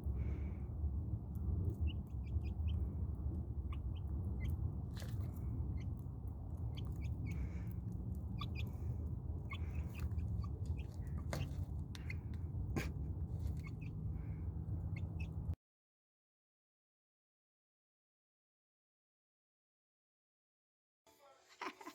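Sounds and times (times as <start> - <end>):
steady low rumble: 0.0 - 15.6
chickens chirping and clucking: 1.4 - 15.6.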